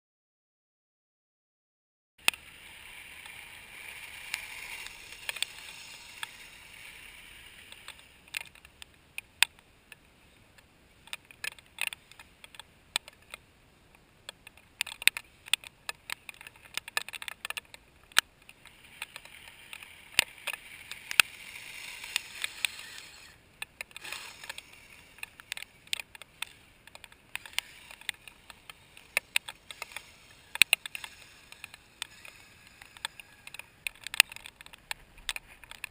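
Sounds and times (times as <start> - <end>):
tracks clicking on ice: 2.2 - 10.0, 14.3 - 35.9
electric motor whirring: 2.3 - 8.7, 18.6 - 34.6.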